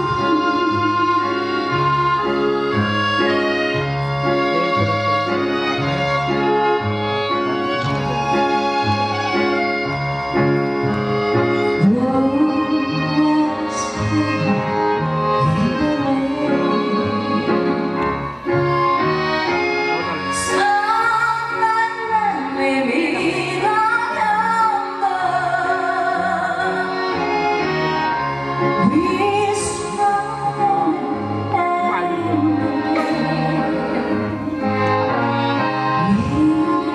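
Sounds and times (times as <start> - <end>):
instrumental accompaniment: 0.0 - 36.9
woman singing a slow ballad: 11.8 - 14.8, 15.4 - 17.7, 20.4 - 26.9, 28.8 - 34.3, 36.0 - 36.9.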